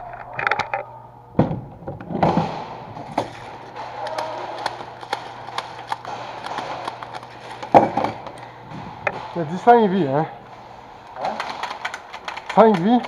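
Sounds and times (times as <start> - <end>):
airsoft guns firing clicks: 2.2 - 8.5.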